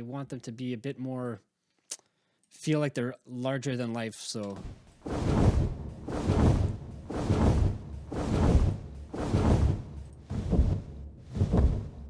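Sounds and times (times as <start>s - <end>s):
deep whooshing wing flaps: 4.6s - 12.0s.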